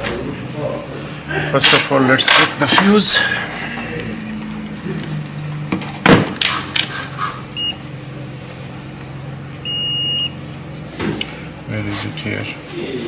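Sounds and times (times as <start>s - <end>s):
low electrical hum: 0.0s - 13.0s
multimeter beeps: 7.5s - 7.8s, 9.6s - 10.4s.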